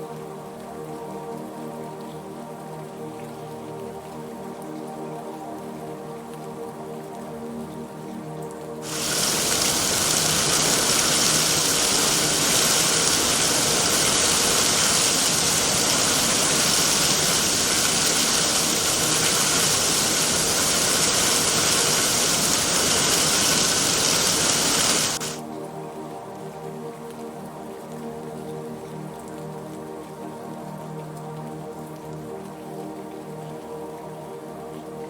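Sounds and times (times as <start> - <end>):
loud rush of water: 8.8 - 25.4.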